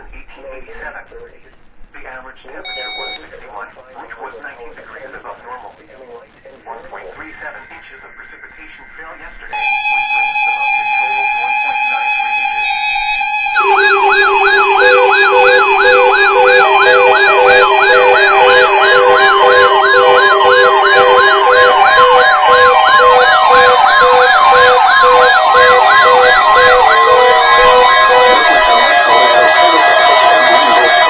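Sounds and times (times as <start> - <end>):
pulsed beeping tones: 2.7 - 3.2, 9.6 - 31.0
electronic siren yelping: 9.6 - 31.0
steady low tone: 13.6 - 22.8.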